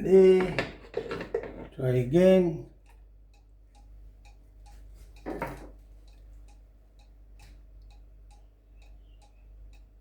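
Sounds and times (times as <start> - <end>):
clock ticking: 2.1 - 10.0.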